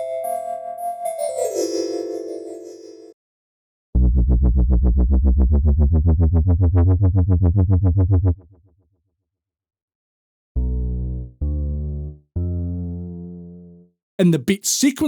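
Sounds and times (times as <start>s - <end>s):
pulsing bass synth tone: 4.0s - 8.3s, 10.6s - 13.7s.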